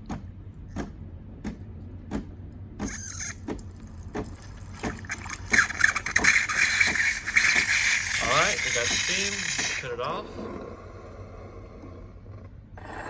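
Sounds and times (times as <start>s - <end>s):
regular ticking: 2.9s - 10.3s
espresso machine humming: 2.9s - 10.4s
steam wand spitting hiss: 5.5s - 10.0s.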